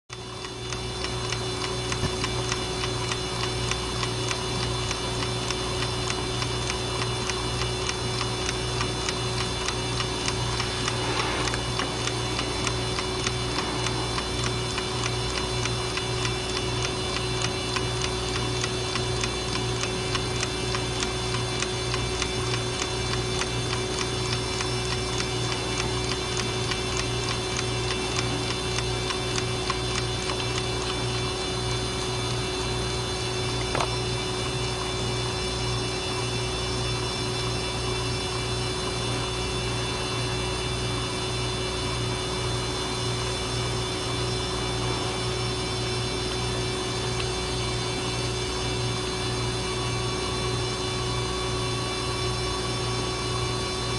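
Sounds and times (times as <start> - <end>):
alarm clock ticking: 0.4 - 31.0
low hum: 7.2 - 32.4, 43.0 - 48.6.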